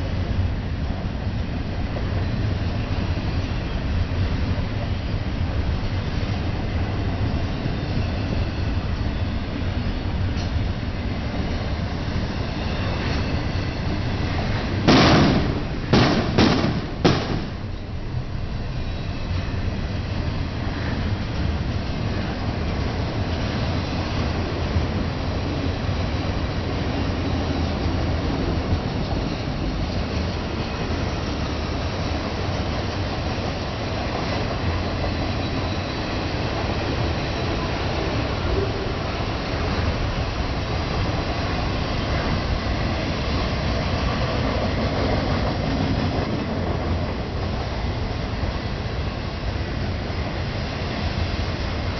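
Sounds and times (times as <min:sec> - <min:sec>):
freight train rumbling: 0:00.0 - 0:51.9
sharp bangs: 0:14.9 - 0:17.6.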